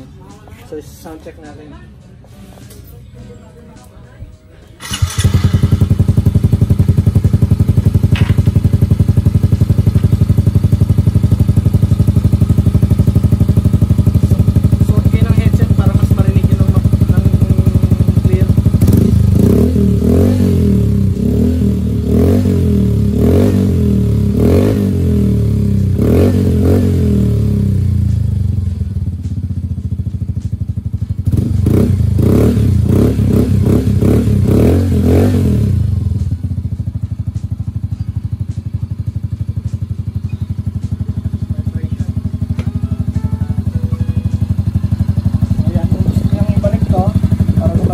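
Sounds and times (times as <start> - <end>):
motorcycle engine idling: 4.7 - 47.9
motorcycle engine revving: 4.8 - 47.9.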